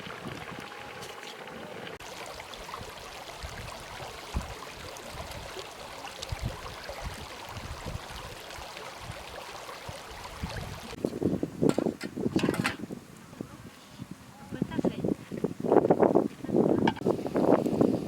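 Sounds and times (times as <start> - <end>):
wind buffeting microphone: 2.7 - 5.6, 6.2 - 8.4, 9.0 - 18.0.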